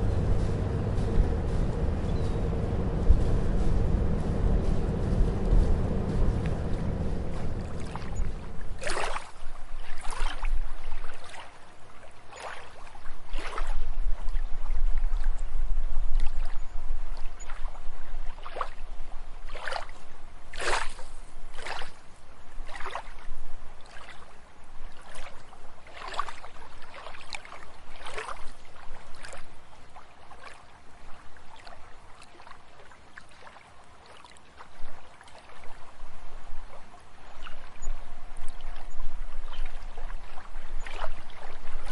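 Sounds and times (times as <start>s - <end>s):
low rumble: 0.0s - 9.5s
water splashing and lapping: 0.0s - 41.9s.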